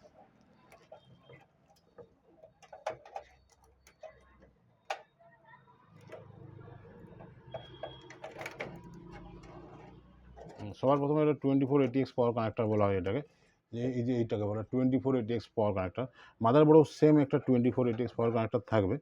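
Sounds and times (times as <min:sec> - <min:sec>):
hands handling computer parts: 0:00.0 - 0:05.2, 0:06.0 - 0:13.2.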